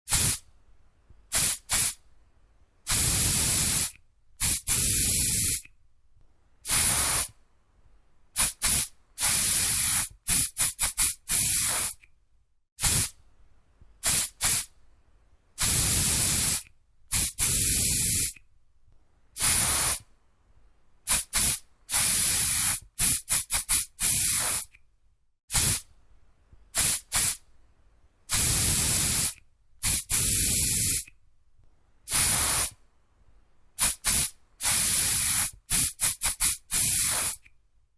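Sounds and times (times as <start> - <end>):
aerosol spray can hissing: 0.1 - 0.4, 1.3 - 2.0, 2.9 - 5.7, 6.7 - 7.4, 8.4 - 12.0, 12.8 - 13.1, 14.0 - 14.7, 15.6 - 18.4, 19.4 - 20.1, 21.1 - 24.7, 25.5 - 25.8, 26.8 - 27.4, 28.3 - 31.1, 32.1 - 32.8, 33.8 - 37.4.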